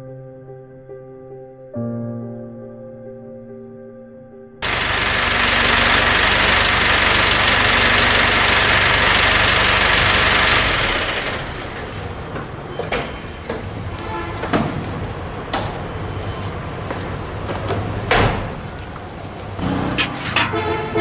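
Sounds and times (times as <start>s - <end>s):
vehicle engine running: 4.6s - 12.2s.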